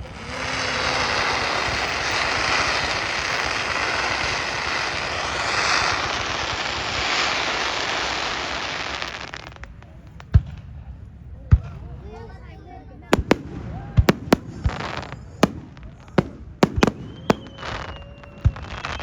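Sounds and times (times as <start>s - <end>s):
sharp firework cracks: 0.0s - 10.9s, 13.0s - 19.0s
fireworks crackling hiss: 0.0s - 11.9s, 13.0s - 19.0s.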